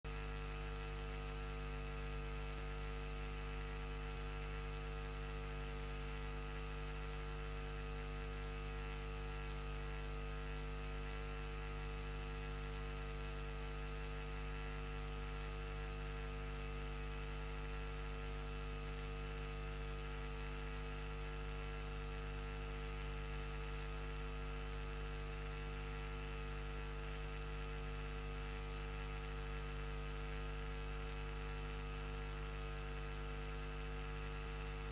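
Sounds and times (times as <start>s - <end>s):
electrical mains hum: 0.1s - 34.9s
faint high-pitched whine: 26.6s - 28.2s.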